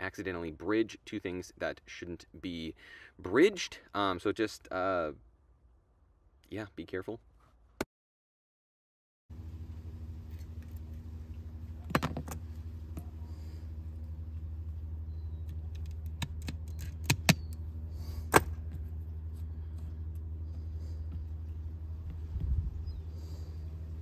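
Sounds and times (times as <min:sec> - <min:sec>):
steady low hum: 0:09.3 - 0:24.0.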